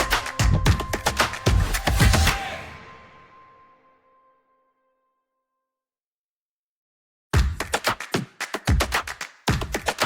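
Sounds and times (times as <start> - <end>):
electronic music with drum beat: 0.0 - 2.9, 7.4 - 10.0.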